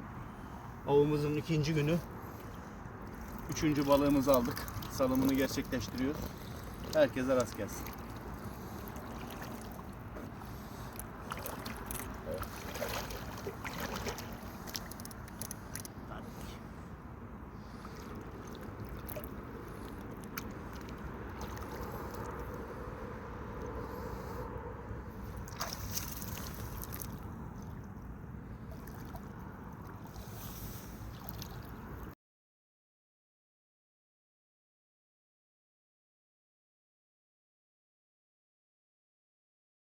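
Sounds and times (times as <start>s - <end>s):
steady low rumble: 0.0s - 32.2s
lake water sloshing: 1.6s - 16.8s, 17.5s - 24.4s, 25.1s - 32.1s
fish splashing in water: 3.1s - 15.8s, 17.6s - 22.9s, 25.2s - 28.0s, 28.6s - 32.1s.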